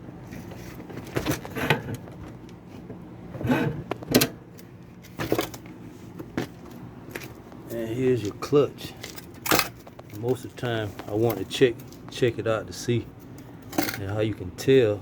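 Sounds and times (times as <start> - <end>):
metal parts knocking and scraping: 9.0 - 11.5, 13.6 - 14.1.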